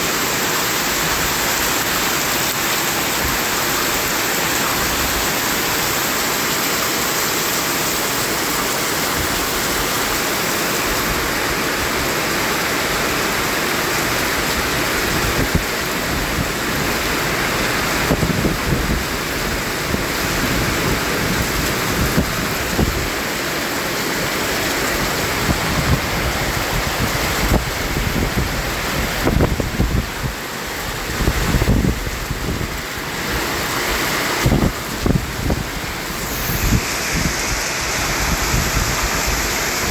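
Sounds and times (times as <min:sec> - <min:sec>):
white noise hiss: 0:22.2 - 0:39.9
low rumbling gusts: 0:24.2 - 0:39.9.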